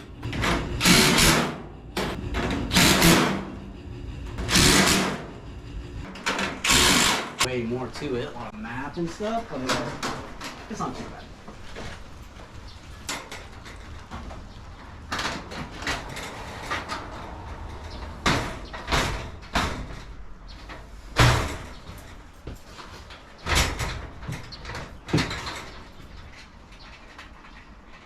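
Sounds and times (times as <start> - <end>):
garage door panels knocking and clattering: 9.6 - 10.9, 13.0 - 26.4.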